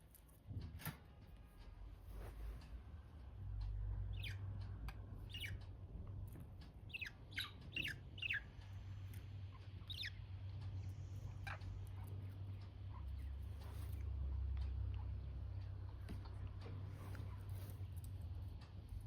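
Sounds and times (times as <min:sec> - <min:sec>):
steady low hum: 0:00.0 - 0:19.0
budgerigars chirping: 0:04.1 - 0:04.5, 0:05.2 - 0:05.6, 0:06.9 - 0:10.3, 0:11.3 - 0:13.4.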